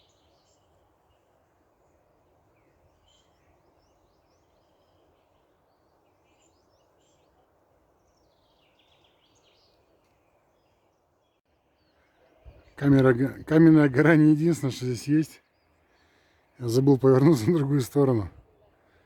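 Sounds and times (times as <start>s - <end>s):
low steady background noise: 0.0s - 19.0s
small birds chirping: 0.0s - 19.0s.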